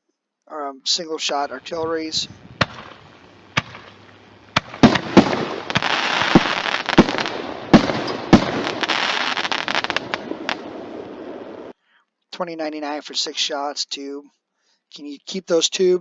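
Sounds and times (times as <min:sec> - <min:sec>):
crackling hiss: 0:00.5 - 0:11.8
fireworks bangs: 0:01.0 - 0:11.7.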